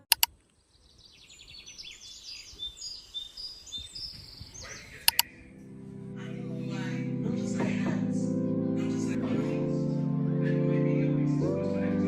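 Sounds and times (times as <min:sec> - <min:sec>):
sharp double click: 0:00.0 - 0:00.3, 0:05.1 - 0:05.3
small birds chirping: 0:00.0 - 0:05.4
music with held notes: 0:05.3 - 0:12.0.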